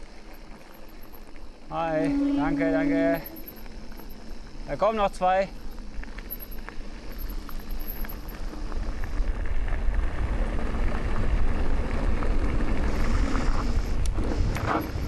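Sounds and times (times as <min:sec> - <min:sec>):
bike rattles and clicks: 0:00.0 - 0:15.0
bike tyres rumbling over dirt: 0:00.0 - 0:15.0.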